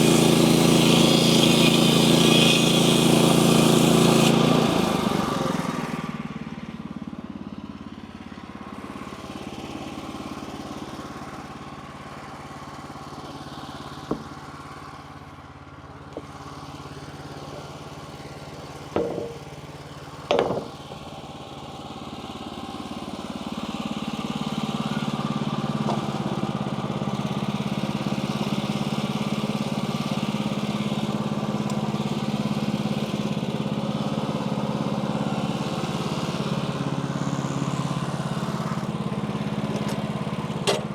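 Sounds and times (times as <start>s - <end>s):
small gas engine running: 0.0s - 40.9s
sharp clanks: 19.0s - 19.6s.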